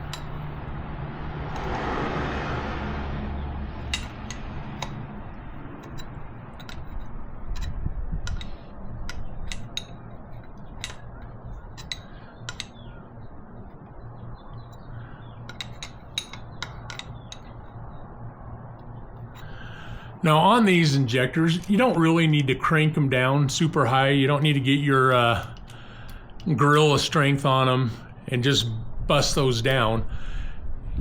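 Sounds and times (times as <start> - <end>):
low hum: 0.0 - 31.0
wrench clicking on metal nuts: 3.9 - 5.0, 5.8 - 12.8, 15.5 - 17.7.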